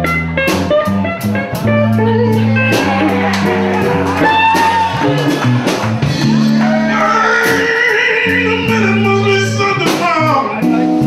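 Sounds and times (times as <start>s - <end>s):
electric blues band playing: 0.0s - 11.0s
lead guitar bent notes: 0.0s - 11.0s
person singing: 6.2s - 10.8s.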